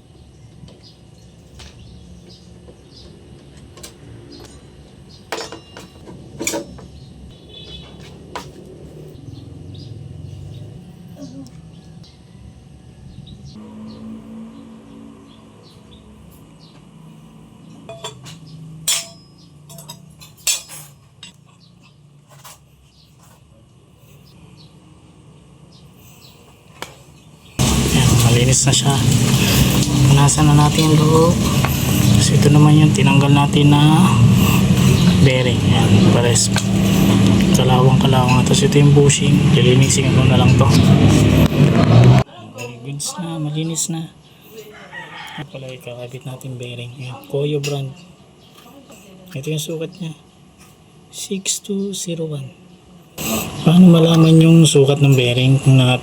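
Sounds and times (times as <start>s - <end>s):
metallic clinks of tools: 17.9s - 21.6s.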